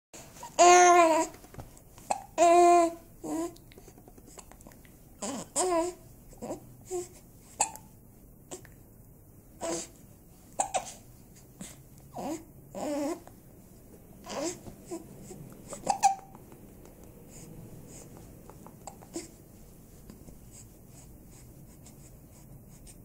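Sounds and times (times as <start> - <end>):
person hiccuping: 15.7 - 16.4.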